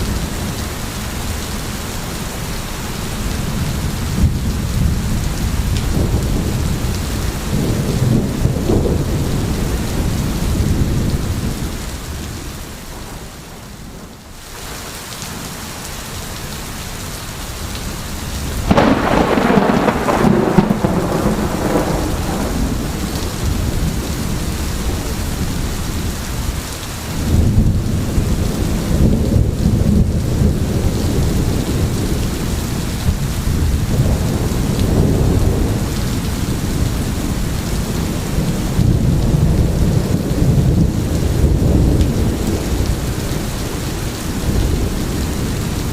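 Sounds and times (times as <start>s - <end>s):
rain falling: 0.0s - 45.9s
rolling thunder: 3.4s - 14.2s, 18.4s - 45.9s
loud thunderclap: 4.0s - 11.7s, 18.6s - 26.1s, 27.2s - 43.6s.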